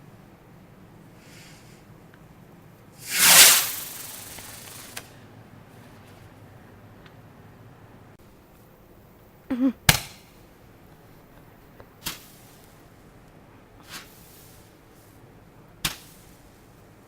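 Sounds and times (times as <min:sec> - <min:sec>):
fireworks bangs: 0:03.0 - 0:05.1.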